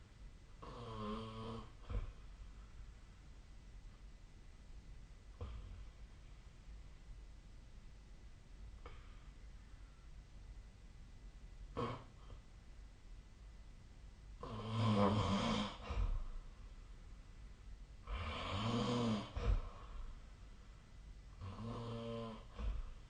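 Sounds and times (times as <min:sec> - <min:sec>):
person snoring: 0:00.6 - 0:02.2, 0:14.4 - 0:16.2, 0:18.1 - 0:20.0, 0:21.4 - 0:23.0.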